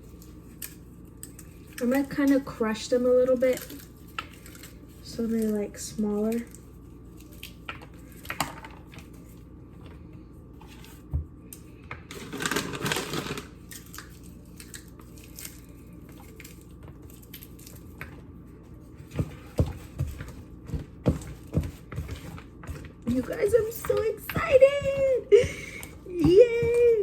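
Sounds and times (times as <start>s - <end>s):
walnuts cracking and crunching: 11.5s - 18.1s.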